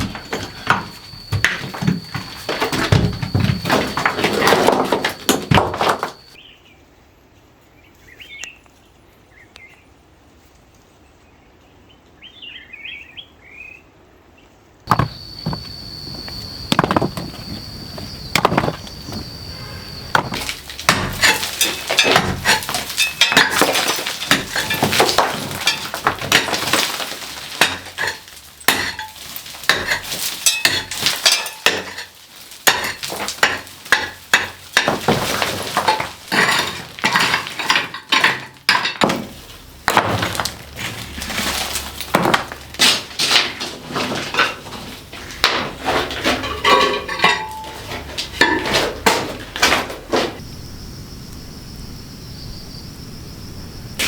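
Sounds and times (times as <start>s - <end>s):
hard objects clattering: 0.0s - 6.4s, 14.9s - 50.4s.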